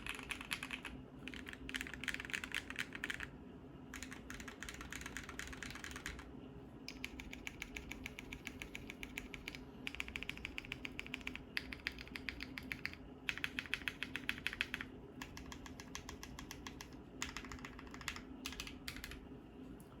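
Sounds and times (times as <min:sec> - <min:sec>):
fast typing on mechanical keyboard: 0:00.0 - 0:03.3, 0:03.9 - 0:06.3, 0:06.9 - 0:19.2.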